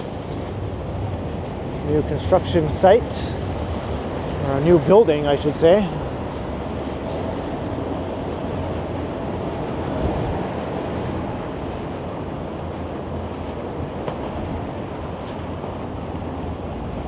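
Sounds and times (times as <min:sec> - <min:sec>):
freight train rumbling: 0:00.0 - 0:17.0
wind on microphone: 0:00.0 - 0:17.0.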